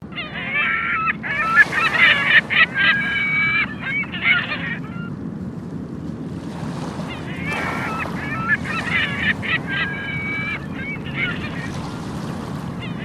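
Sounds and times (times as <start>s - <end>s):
gulls calling harshly: 0.0s - 13.0s
surf breaking: 0.8s - 13.0s.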